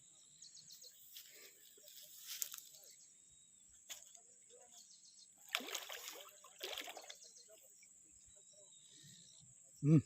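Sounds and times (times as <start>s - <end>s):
fish splashing in water: 5.4s - 7.2s.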